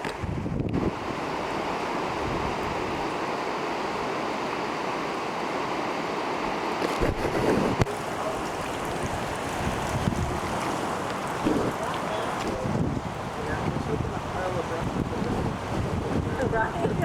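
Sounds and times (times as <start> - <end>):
wind buffeting microphone: 0.0 - 3.2, 7.0 - 17.0
creek rushing in flood: 0.0 - 17.0.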